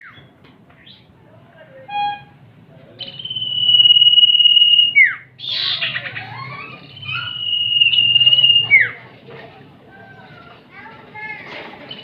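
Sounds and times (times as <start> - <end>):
bird whistle: 3.0 - 5.9, 6.5 - 9.0
harsh buzzy bird chatter: 3.0 - 9.0.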